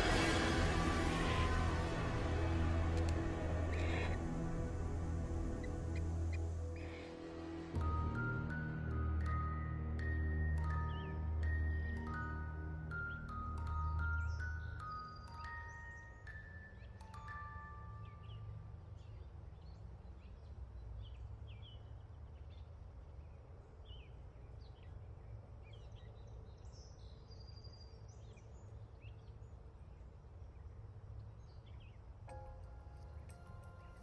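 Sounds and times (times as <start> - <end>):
low steady rumble: 0.0 - 6.8
small birds chirping: 5.2 - 34.0
bird trill: 7.8 - 22.7, 31.5 - 34.0.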